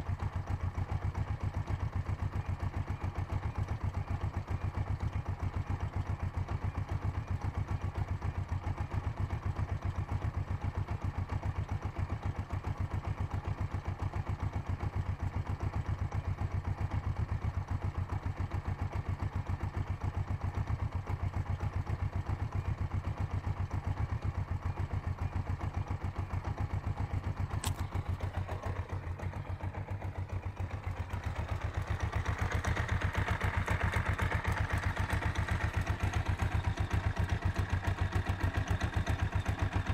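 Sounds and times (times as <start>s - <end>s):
motorcycle engine idling: 0.0s - 39.9s
sharp click: 27.6s - 28.0s.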